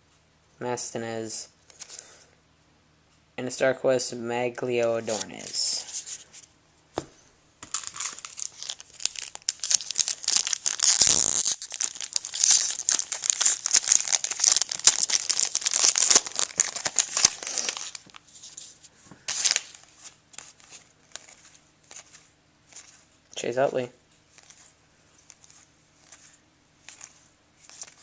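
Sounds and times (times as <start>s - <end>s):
wrapper tearing and crinkling: 7.6s - 18.6s, 19.3s - 22.2s, 24.4s - 28.0s.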